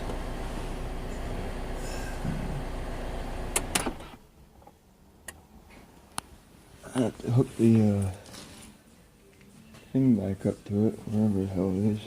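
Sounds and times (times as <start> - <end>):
car engine idling: 0.0 - 4.1.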